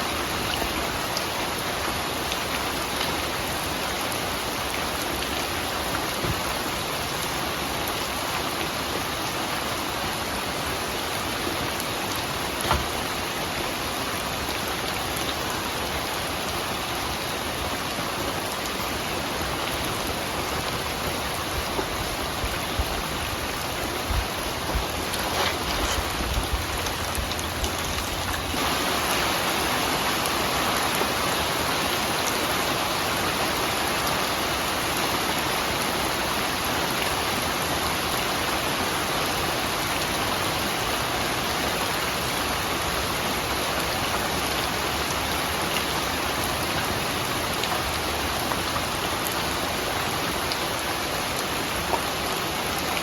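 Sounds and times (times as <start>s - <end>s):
steady rain: 0.0s - 53.0s.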